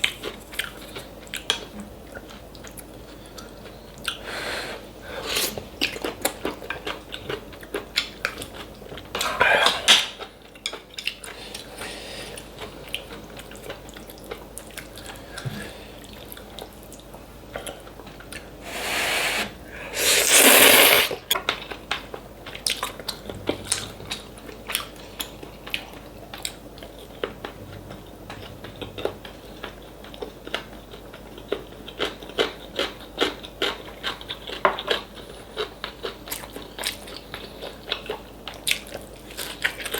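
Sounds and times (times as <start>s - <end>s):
loud noodle slurps: 4.6s - 5.7s, 18.6s - 21.3s.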